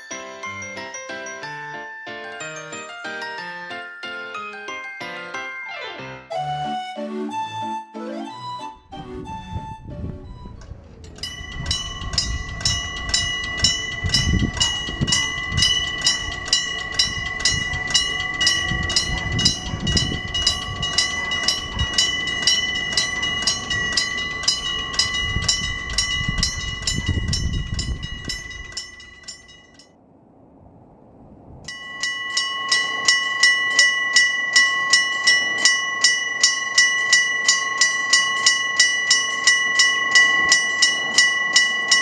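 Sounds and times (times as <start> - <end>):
train rumbling past: 8.7 - 42.0
level-crossing warning bell: 10.3 - 30.0, 31.7 - 42.0.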